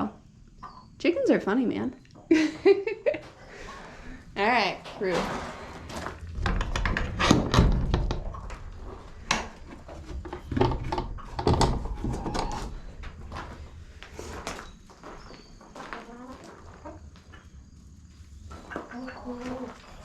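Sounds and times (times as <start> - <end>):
wooden door knocks and scrapes: 6.1 - 12.7.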